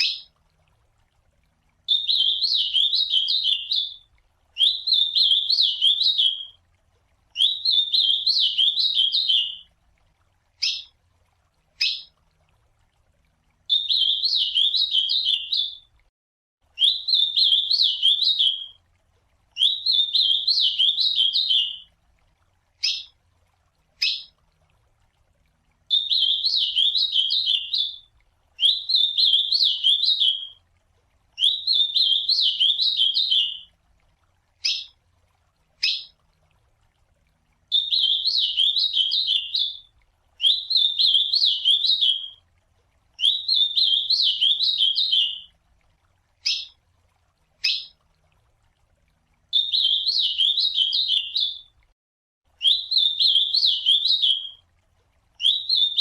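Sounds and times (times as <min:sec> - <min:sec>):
bird singing whistled song: 0:00.0 - 0:00.3, 0:01.9 - 0:04.0, 0:04.6 - 0:06.6, 0:07.4 - 0:09.7, 0:10.6 - 0:10.9, 0:11.8 - 0:12.1, 0:13.7 - 0:15.9, 0:16.8 - 0:18.8, 0:19.6 - 0:21.9, 0:22.8 - 0:23.1, 0:24.0 - 0:24.3, 0:25.9 - 0:30.6, 0:31.4 - 0:33.7, 0:34.6 - 0:35.0, 0:35.8 - 0:36.1, 0:37.7 - 0:42.4, 0:43.2 - 0:45.5, 0:46.4 - 0:46.8, 0:47.6 - 0:48.0, 0:49.5 - 0:51.7, 0:52.6 - 0:54.6, 0:55.4 - 0:56.0.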